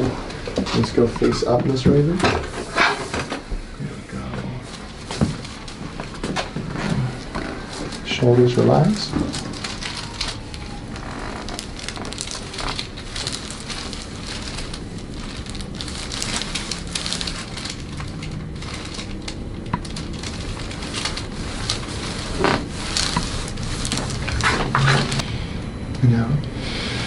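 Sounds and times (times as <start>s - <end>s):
body and clothing rustling: 4.1s - 25.2s.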